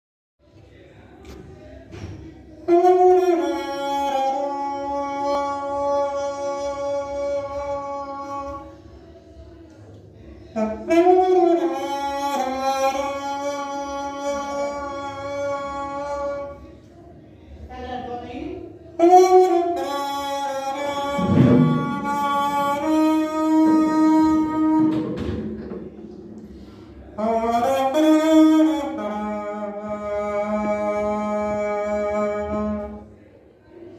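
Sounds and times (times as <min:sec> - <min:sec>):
plastic bottle horn blown: 0:02.6 - 0:08.9, 0:10.5 - 0:16.7, 0:19.0 - 0:33.1.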